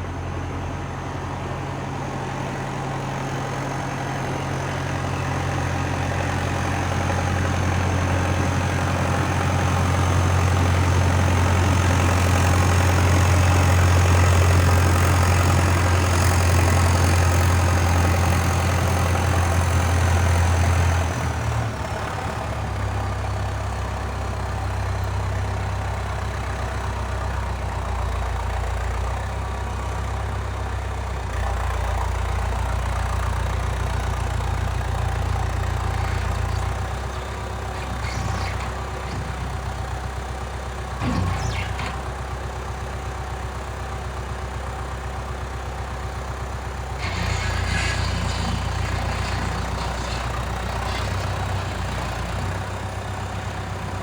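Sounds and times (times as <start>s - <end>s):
diesel engine running: 0.0s - 54.0s
thin high engine whine: 35.2s - 42.5s.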